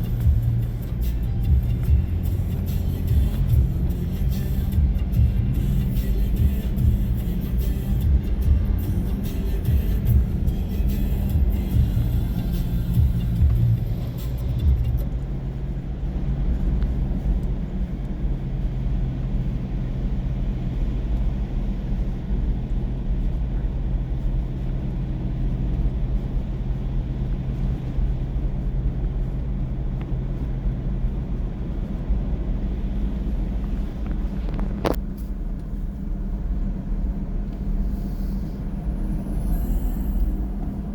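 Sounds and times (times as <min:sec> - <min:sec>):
diesel engine driving: 0:00.0 - 0:40.9
road noise: 0:00.0 - 0:40.9.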